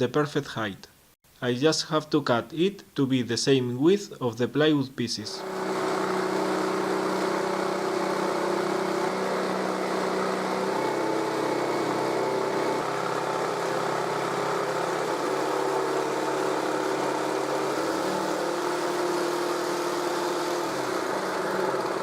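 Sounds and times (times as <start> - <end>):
jigsaw cutting wood: 5.4 - 22.0.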